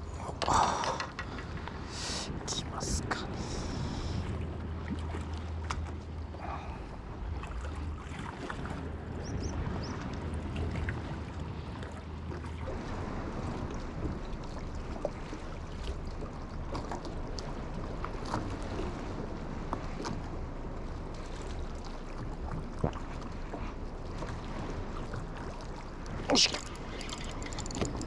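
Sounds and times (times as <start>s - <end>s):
wind on microphone: 0.0s - 5.2s, 6.3s - 28.0s
water: 0.0s - 28.0s
fishing tackle clicks: 26.5s - 28.0s.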